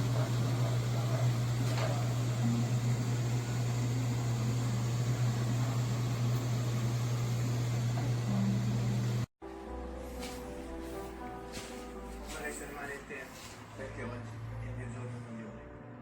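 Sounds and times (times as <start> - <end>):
robot vacuum motor hum: 0.0 - 9.3.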